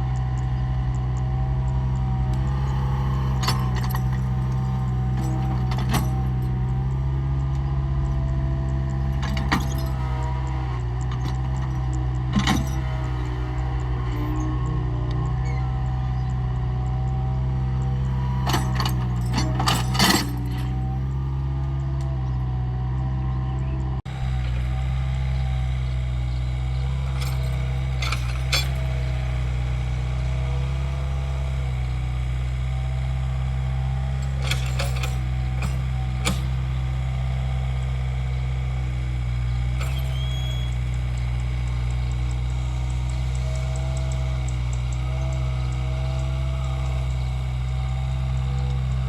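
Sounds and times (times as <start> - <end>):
diesel engine running: 0.0 - 49.0
metallic clinking and clanking: 18.4 - 20.8, 27.0 - 29.3, 34.2 - 36.7, 39.8 - 40.7.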